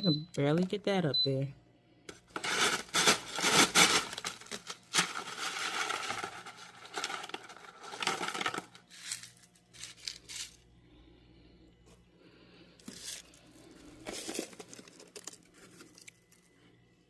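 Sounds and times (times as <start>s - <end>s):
ice pellets rattling and clinking: 2.3s - 10.6s, 12.8s - 16.5s.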